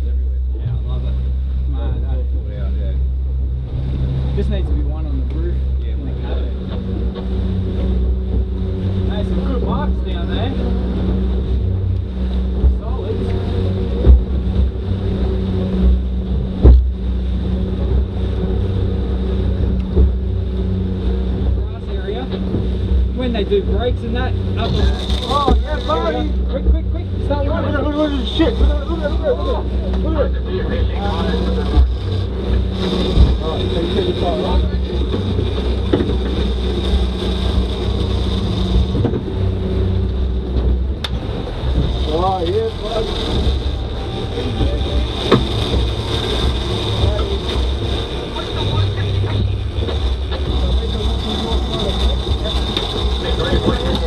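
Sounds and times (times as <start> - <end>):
motorboat engine running: 0.0 - 54.0
wind on microphone: 0.0 - 54.0.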